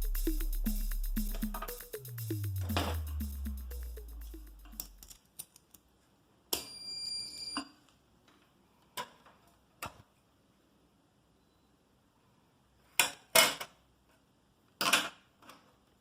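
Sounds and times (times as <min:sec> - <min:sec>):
background music: 0:00.0 - 0:05.1.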